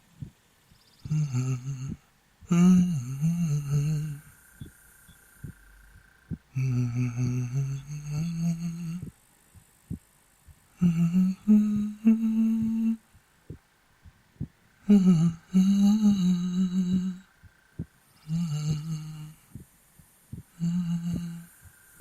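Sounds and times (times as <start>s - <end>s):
heartbeat thuds: 0.0s - 0.4s, 1.0s - 21.8s
man humming: 1.0s - 4.7s, 5.4s - 9.2s, 10.8s - 13.1s, 14.4s - 17.4s, 18.2s - 19.7s, 20.3s - 21.8s.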